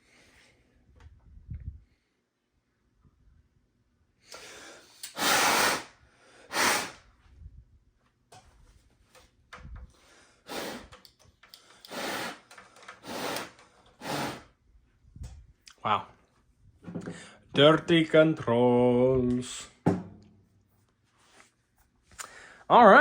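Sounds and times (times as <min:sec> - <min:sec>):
aerosol spray hissing bursts: 0:05.1 - 0:05.9, 0:06.5 - 0:07.0, 0:10.5 - 0:10.9, 0:11.9 - 0:14.4.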